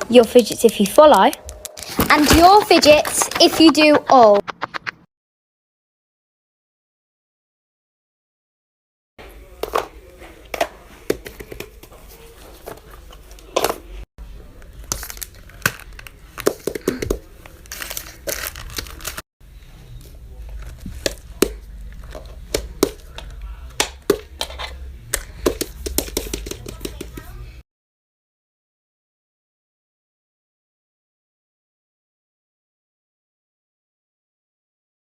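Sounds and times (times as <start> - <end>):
crinkling: 14.7 - 23.1.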